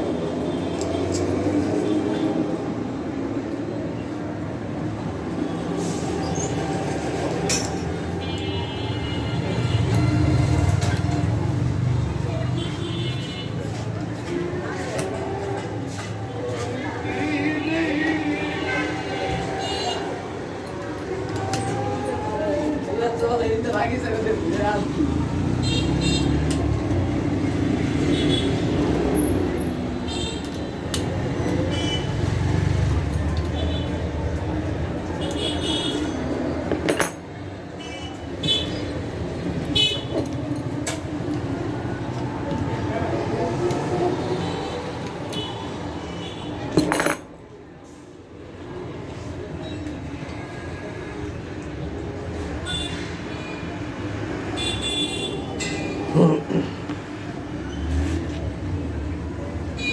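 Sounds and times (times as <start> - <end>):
street traffic rumble: 0.0 - 59.9.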